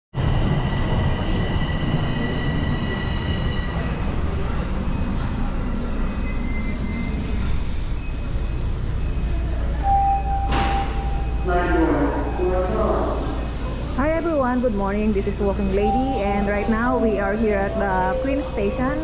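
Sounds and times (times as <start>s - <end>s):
low train rumble: 0.2s - 19.0s
train wheels squealing on rails: 0.6s - 11.4s.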